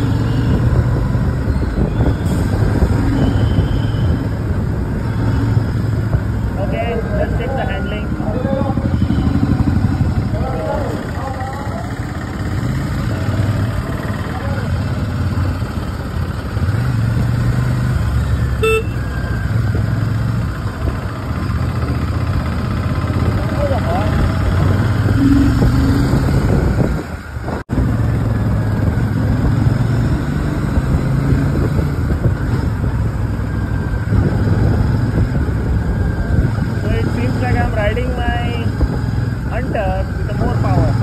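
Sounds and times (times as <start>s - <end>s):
wind and road noise: 0.0s - 41.0s
vehicle horn beep: 3.1s - 4.2s, 8.9s - 9.6s, 18.6s - 19.2s
motorcycle engine running: 3.2s - 41.0s.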